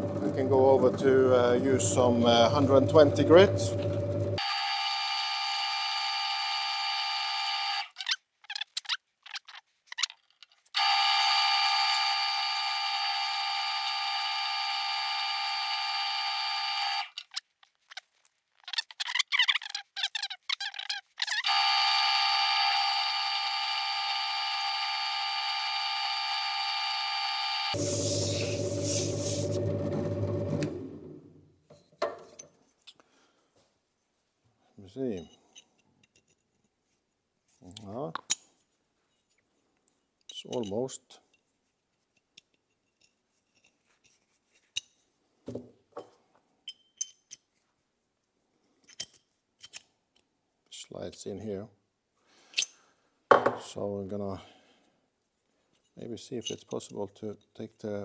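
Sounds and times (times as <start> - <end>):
electric drill running: 3.5 - 7.9, 10.8 - 17.1, 21.5 - 31.2
metal part sanding on sandpaper: 27.8 - 29.6.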